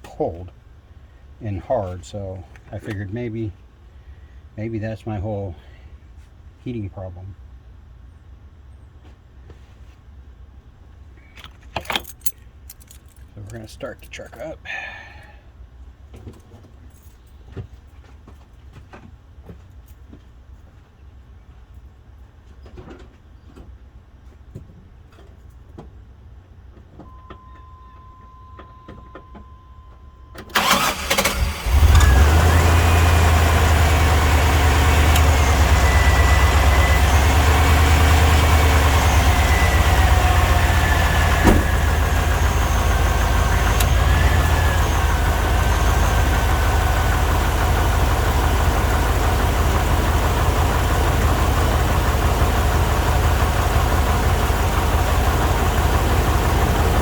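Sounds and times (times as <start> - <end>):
engine starter cranking: 30.4 - 57.0
truck engine idling: 30.5 - 57.0.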